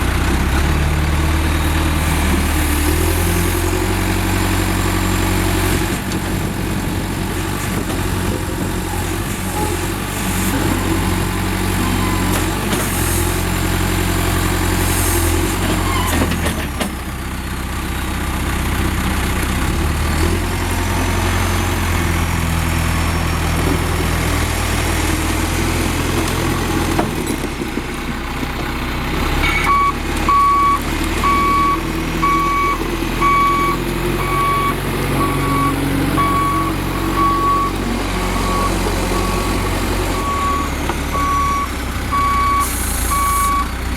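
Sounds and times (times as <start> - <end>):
diesel engine running: 0.0 - 43.9
backup alarm beeping: 29.5 - 43.7.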